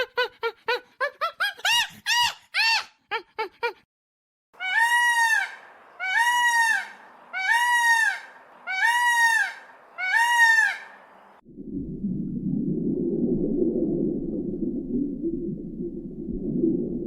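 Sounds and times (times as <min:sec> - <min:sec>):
large bird honking: 0:04.6 - 0:11.4
low noisy rumble: 0:05.4 - 0:17.0.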